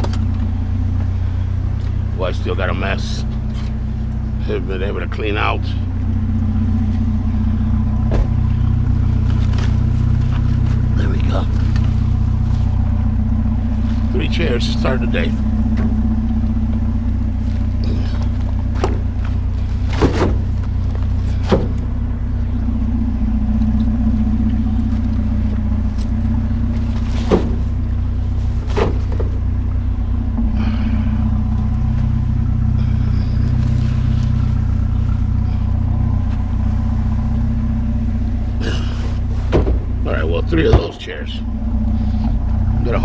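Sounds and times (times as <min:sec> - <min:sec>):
vehicle engine idling: 0:00.0 - 0:43.0
sharp knocks: 0:39.5 - 0:39.9.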